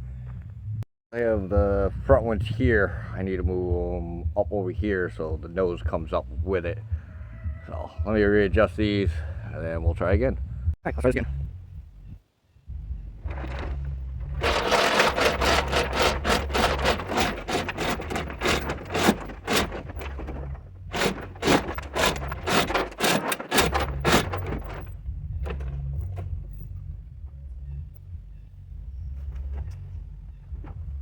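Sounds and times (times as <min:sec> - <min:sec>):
steady low hum: 0:08.0 - 0:31.0
hoist ratcheting clicks: 0:13.3 - 0:26.6.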